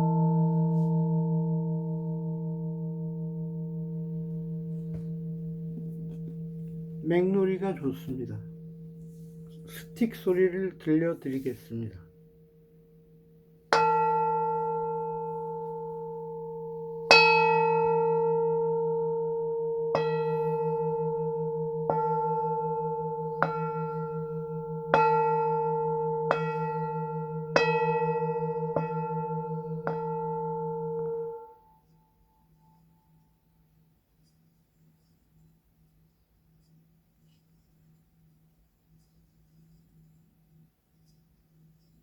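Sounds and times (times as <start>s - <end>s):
singing bowl struck and ringing: 0.0s - 10.5s, 12.1s - 33.2s.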